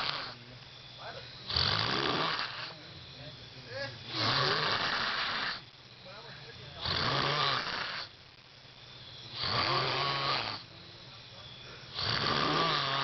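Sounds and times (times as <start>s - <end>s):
person snoring: 1.5s - 2.8s, 4.0s - 5.6s, 6.8s - 8.1s, 9.3s - 10.7s, 11.6s - 13.0s
quiet breathing: 10.5s - 12.2s.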